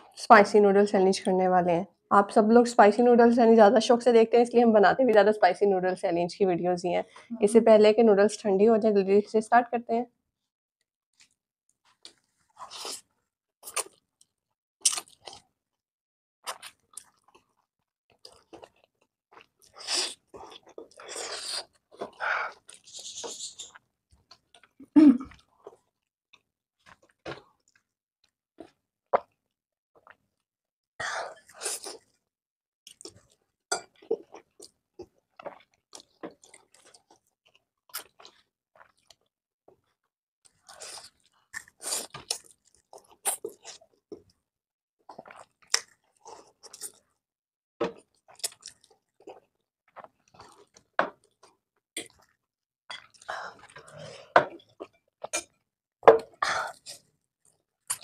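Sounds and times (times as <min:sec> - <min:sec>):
noodles being chewed: 0:34.0 - 0:39.3.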